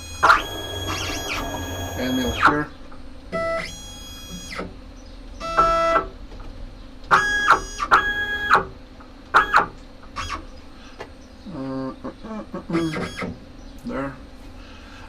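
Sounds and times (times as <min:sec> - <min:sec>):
stepper motors whining: 0:00.0 - 0:02.8.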